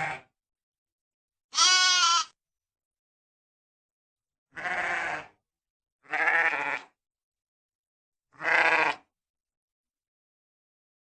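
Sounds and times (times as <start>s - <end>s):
sheep bleating: 0.0s - 0.3s, 1.5s - 2.4s, 4.5s - 5.4s, 6.0s - 7.0s, 8.4s - 9.1s.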